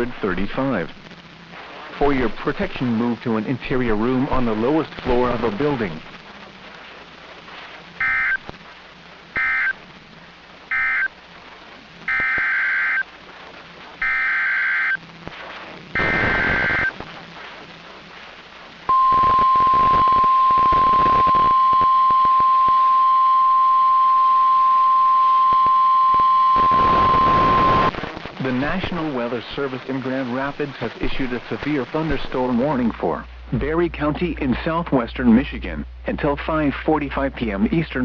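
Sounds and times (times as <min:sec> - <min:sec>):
steady warning alarm tone: 0:08.0 - 0:08.4, 0:09.4 - 0:09.8, 0:10.7 - 0:11.1, 0:12.1 - 0:13.0, 0:14.0 - 0:15.0
data warble bursts: 0:16.0 - 0:17.0.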